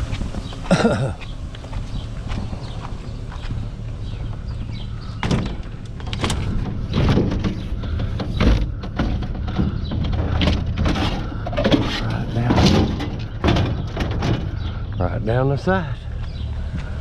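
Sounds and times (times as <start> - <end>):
low engine hum: 0.0 - 17.0
scrap metal knocks and clanks: 5.0 - 15.0.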